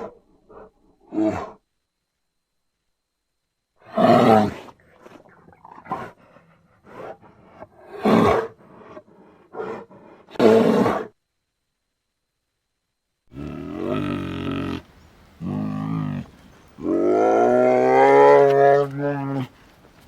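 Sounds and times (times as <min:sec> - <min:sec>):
bear roaring: 0:06.9 - 0:11.2, 0:13.3 - 0:19.6
bear grunting: 0:13.3 - 0:19.6.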